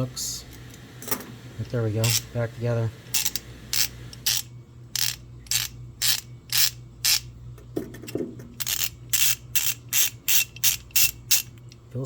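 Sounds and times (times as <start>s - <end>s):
hand ratchet clicking: 2.0s - 2.3s, 3.1s - 7.3s, 8.6s - 11.7s.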